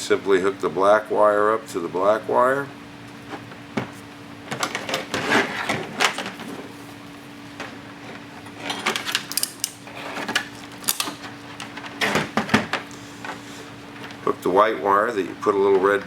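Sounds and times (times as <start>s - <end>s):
faint steady hum: 0.0s - 16.0s
small clicks and rattles of wires: 7.6s - 12.1s.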